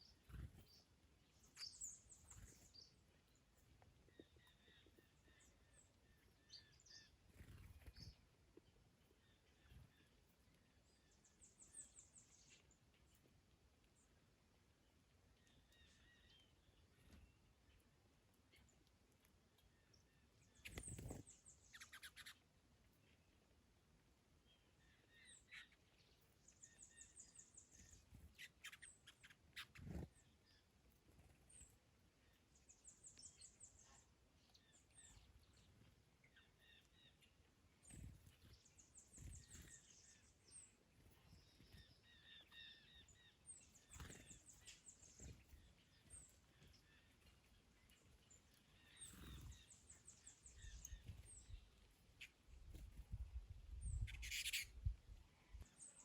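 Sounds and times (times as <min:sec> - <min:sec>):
birds chirping: 0:00.0 - 0:56.0
bird trilling: 0:21.7 - 0:22.4, 0:54.0 - 0:54.8.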